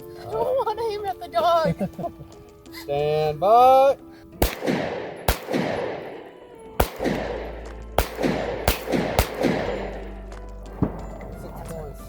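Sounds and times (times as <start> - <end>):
handgun shots with echo: 4.4 - 11.2.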